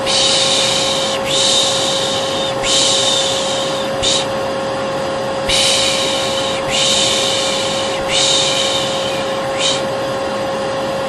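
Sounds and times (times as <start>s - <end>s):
person shushing: 0.0s - 4.3s, 5.5s - 9.9s
vacuum cleaner humming: 0.0s - 11.0s.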